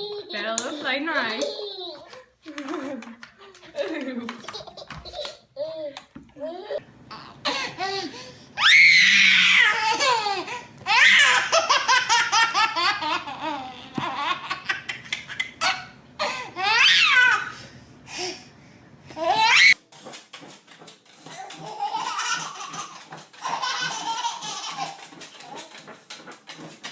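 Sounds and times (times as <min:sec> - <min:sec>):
baby laughing: 0:00.0 - 0:08.3, 0:09.6 - 0:17.6, 0:21.2 - 0:26.0.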